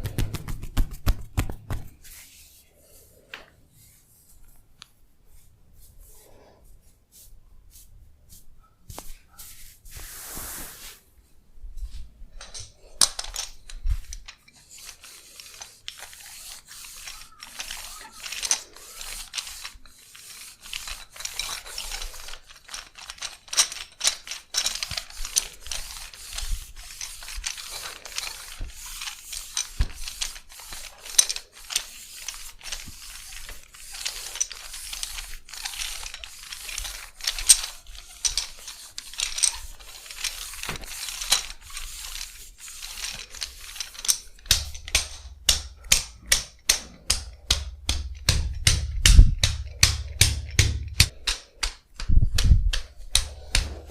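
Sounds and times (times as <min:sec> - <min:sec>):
hands slapping skin: 0:00.0 - 0:02.0.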